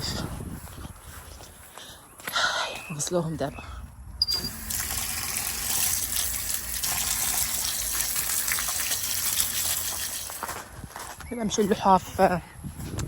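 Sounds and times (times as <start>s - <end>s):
tap water running: 4.3s - 10.5s.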